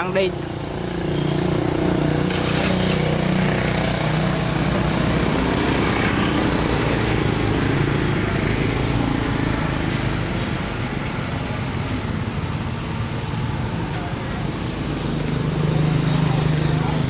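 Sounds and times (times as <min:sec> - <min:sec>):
small engine running: 0:00.8 - 0:07.1.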